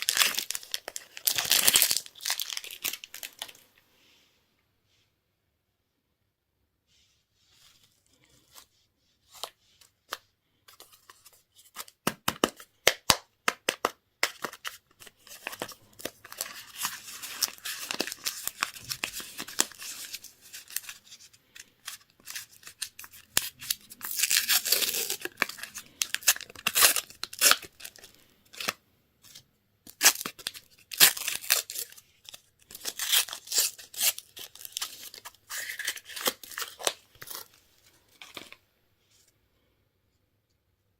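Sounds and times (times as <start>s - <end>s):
packaging being torn and crinkled: 0.0s - 3.6s, 13.6s - 37.6s.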